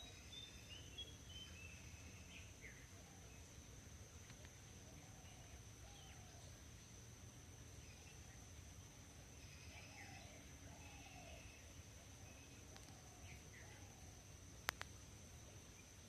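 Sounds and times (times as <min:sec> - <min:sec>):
faint bird chirps: 0:00.0 - 0:06.9, 0:07.8 - 0:16.0
high-pitched insect drone: 0:07.8 - 0:14.5.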